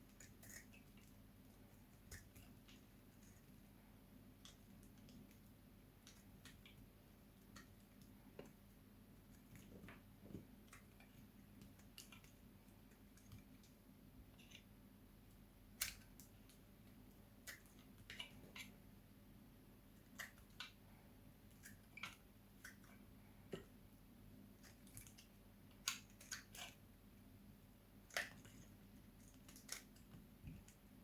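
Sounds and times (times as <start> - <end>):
knife cutting dry soap: 0.0 - 3.6, 17.4 - 18.8, 24.6 - 26.8, 28.0 - 31.0.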